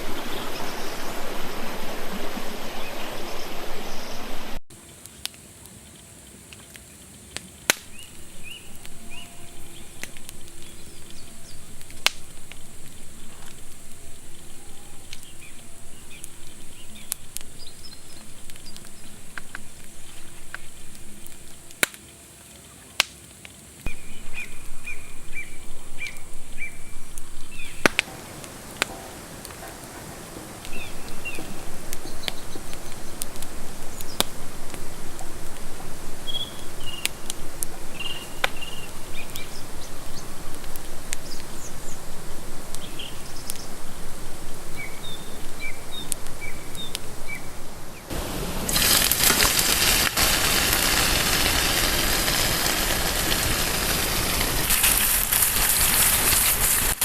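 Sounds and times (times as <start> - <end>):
birds chirping: 0.0 - 5.3, 7.4 - 21.9, 23.8 - 56.6
stream rushing: 0.0 - 6.9, 7.5 - 57.0.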